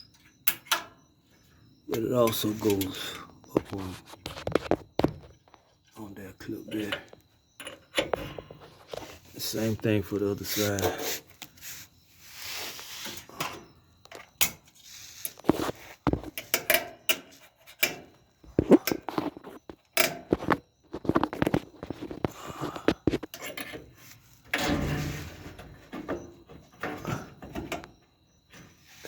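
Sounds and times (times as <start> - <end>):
metal scraping rub: 10.5 - 13.3.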